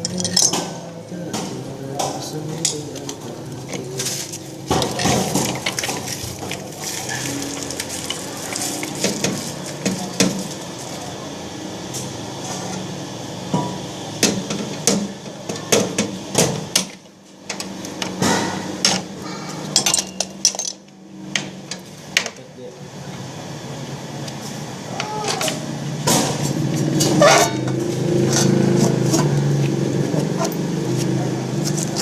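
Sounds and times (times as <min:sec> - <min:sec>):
metal tools clinking: 0:19.8 - 0:20.8.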